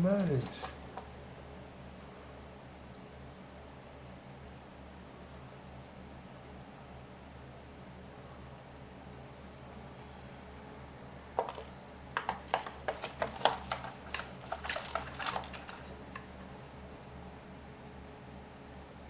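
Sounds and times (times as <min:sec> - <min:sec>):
beak clicks and taps: 0:11.4 - 0:16.3.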